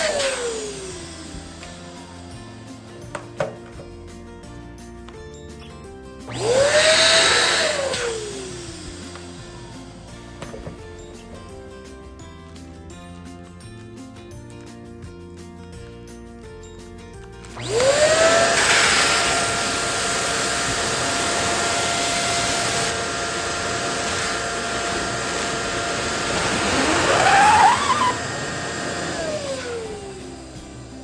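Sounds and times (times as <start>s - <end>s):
electric pump whining: 0.0s - 3.7s, 6.3s - 11.5s, 17.4s - 31.0s
balloon squeaking: 25.4s - 29.2s.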